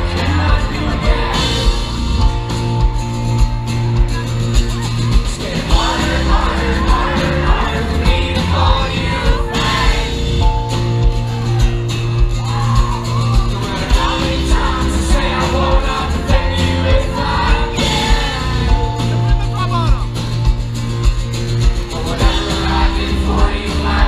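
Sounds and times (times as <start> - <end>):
person singing: 0.0 - 2.0, 5.2 - 10.8, 12.4 - 19.3, 21.9 - 24.0
drum beat: 0.0 - 24.0
rock band playing live: 0.0 - 24.0.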